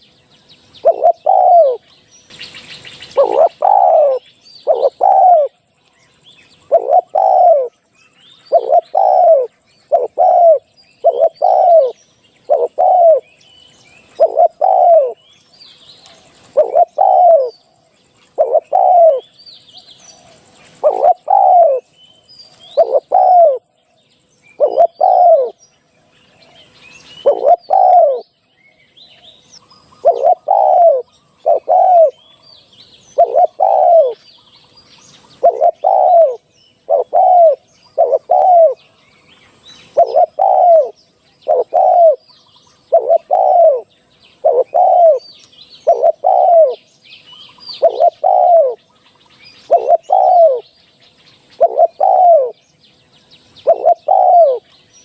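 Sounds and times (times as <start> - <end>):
small birds chirping: 0.0 - 55.0
dove cooing: 0.8 - 1.9, 3.0 - 5.6, 6.6 - 13.4, 14.0 - 15.3, 16.0 - 17.6, 18.3 - 19.4, 20.2 - 22.0, 22.6 - 23.7, 24.5 - 25.6, 27.2 - 28.3, 29.8 - 32.4, 33.0 - 34.2, 35.3 - 38.9, 39.8 - 46.9, 47.6 - 48.9, 49.6 - 50.7, 51.6 - 52.6, 53.6 - 54.7.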